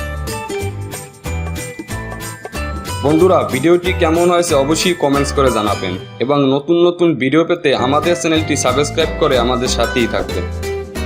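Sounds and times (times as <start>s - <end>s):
music with pulsing bass beat: 0.0s - 3.4s.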